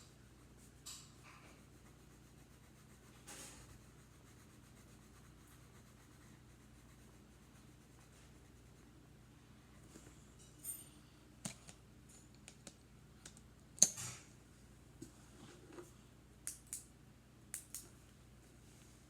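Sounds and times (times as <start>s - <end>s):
pencil scratching on paper: 0.4s - 8.9s.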